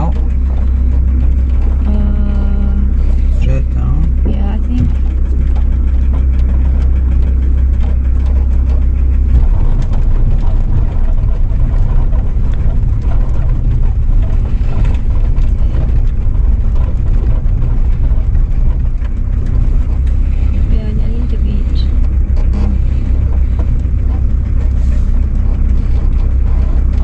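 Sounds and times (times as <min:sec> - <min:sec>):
car engine and road rumble: 0:00.0 - 0:27.0.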